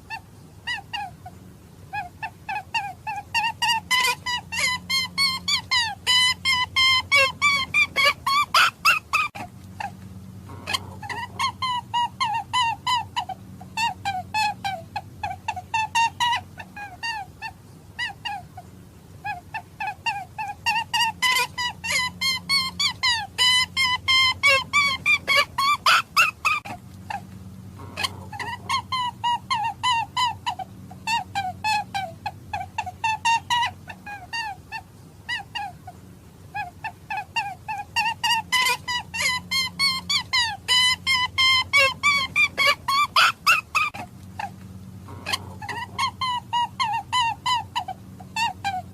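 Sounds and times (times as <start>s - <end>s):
hare calling: 10.5s - 13.2s.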